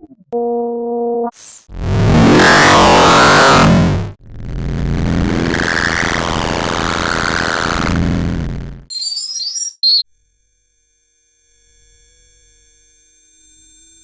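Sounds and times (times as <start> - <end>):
harsh synthesized sci-fi noise: 1.6 - 9.0.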